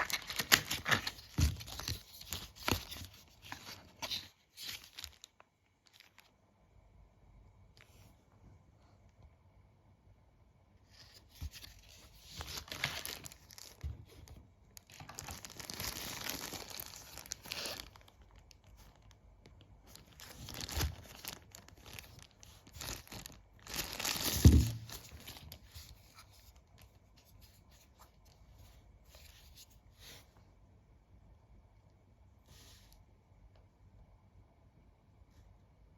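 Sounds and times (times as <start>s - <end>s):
packaging tearing and crumpling: 0.0s - 6.3s, 12.2s - 13.9s, 14.8s - 19.0s, 19.9s - 25.6s.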